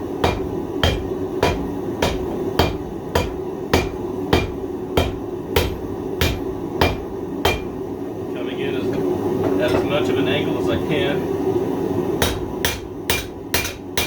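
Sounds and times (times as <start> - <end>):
hammer striking hot steel on anvil: 0.0 - 7.8, 12.2 - 14.0.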